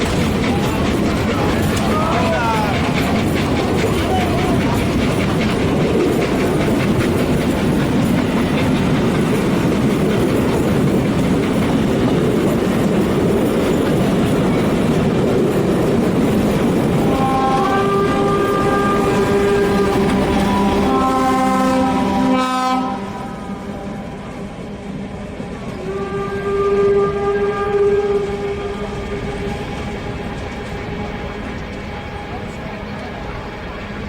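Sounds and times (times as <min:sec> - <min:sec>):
steam train chime whistle: 0:00.0 - 0:08.2, 0:16.8 - 0:24.3, 0:25.7 - 0:34.0
train wheel and rail clatter: 0:00.0 - 0:34.0.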